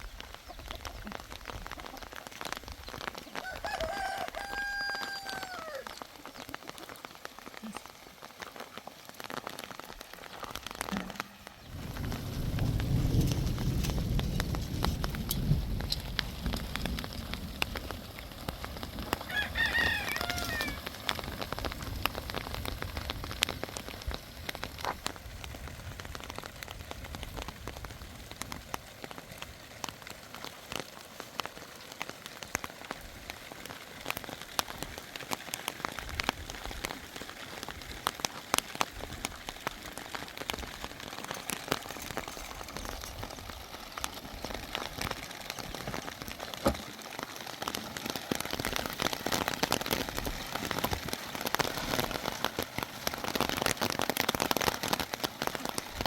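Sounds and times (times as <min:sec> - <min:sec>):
crackling pattering noise: 0:00.0 - 0:56.0
rooster crowing: 0:03.4 - 0:05.9, 0:19.3 - 0:20.9.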